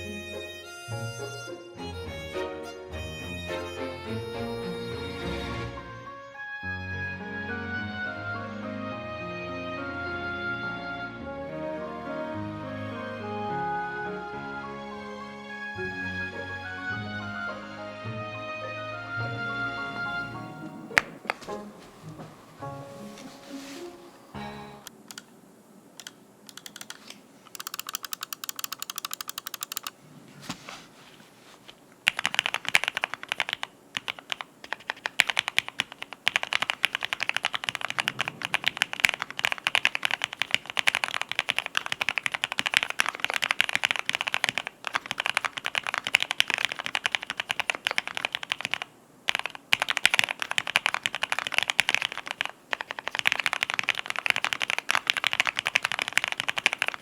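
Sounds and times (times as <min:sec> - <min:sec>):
mechanical keyboard typing: 0:26.0 - 0:30.0, 0:32.0 - 0:57.0.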